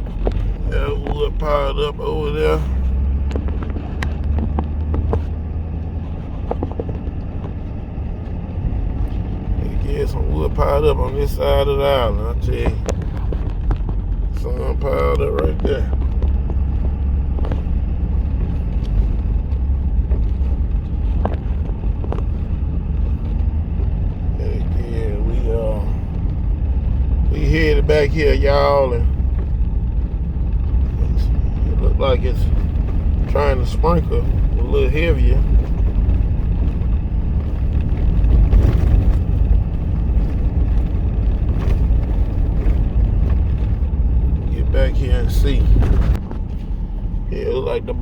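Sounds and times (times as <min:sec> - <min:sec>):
vehicle engine and road rumble: 0:00.0 - 0:48.0
wind on microphone: 0:29.0 - 0:47.3.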